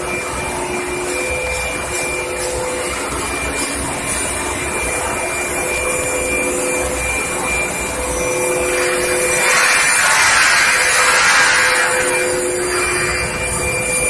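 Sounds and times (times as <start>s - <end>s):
high whine: 0.0s - 14.0s
induction furnace humming: 0.0s - 14.0s
loud hiss: 8.6s - 13.5s.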